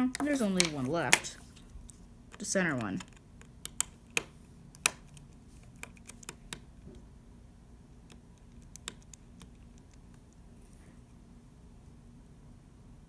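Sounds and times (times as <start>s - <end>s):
hand tool clicking on phone parts: 2.3s - 6.7s.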